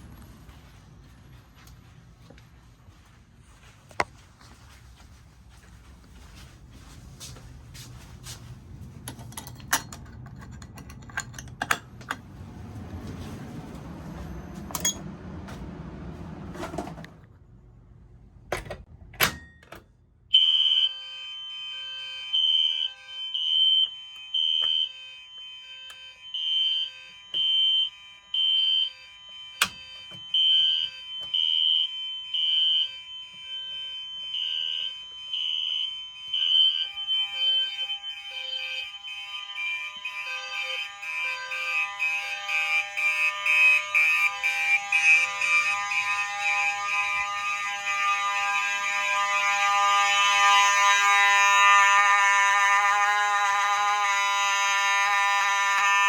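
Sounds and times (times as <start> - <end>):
high-pitched fire alarm beeps: 20.3 - 56.0
rough buzzing alarm with clicks: 20.3 - 56.0.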